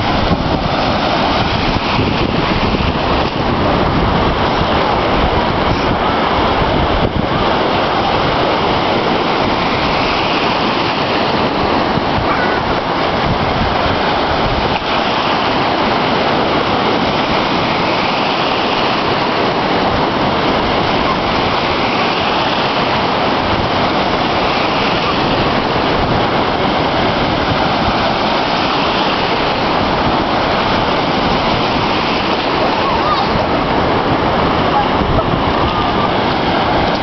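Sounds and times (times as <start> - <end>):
waves breaking on shore: 0.0 - 37.0.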